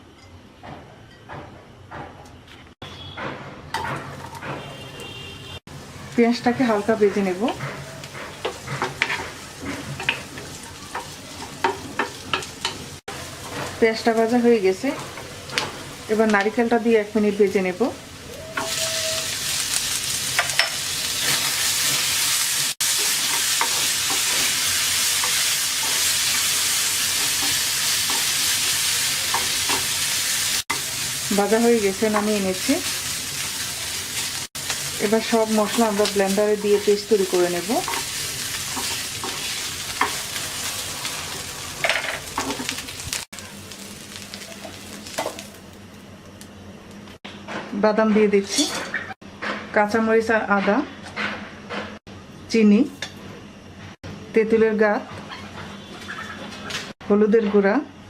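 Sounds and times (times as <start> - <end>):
food sizzling in oil in a pan: 5.7 - 47.0
spatula scraping pan: 7.4 - 10.3.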